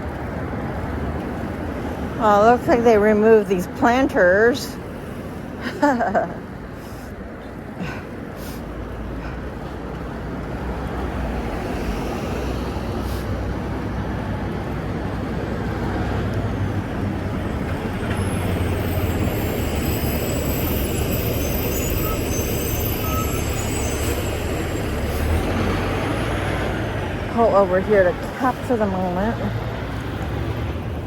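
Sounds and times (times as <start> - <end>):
passing vehicles rumbling: 0.0 - 31.0
faint high-pitched squeals: 17.4 - 25.6.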